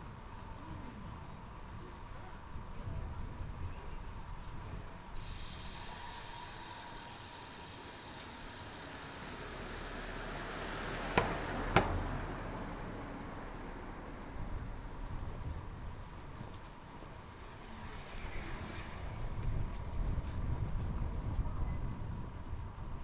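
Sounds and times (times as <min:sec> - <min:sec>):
bicycle freewheel ticking: 0:05.1 - 0:21.0.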